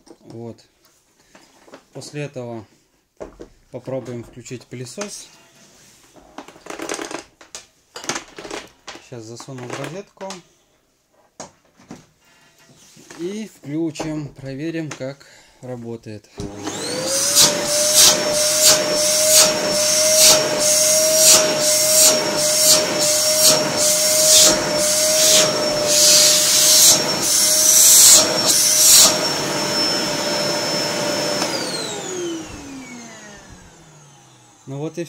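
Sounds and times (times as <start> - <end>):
vacuum motor winding down: 16.4 - 34.9
vacuum cleaner whining: 16.4 - 35.0.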